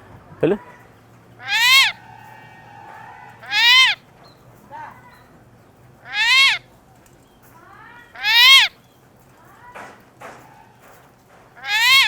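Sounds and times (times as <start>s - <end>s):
bird calling harshly: 1.4s - 2.1s, 3.4s - 4.0s, 6.0s - 6.7s, 8.2s - 8.8s, 11.6s - 12.0s.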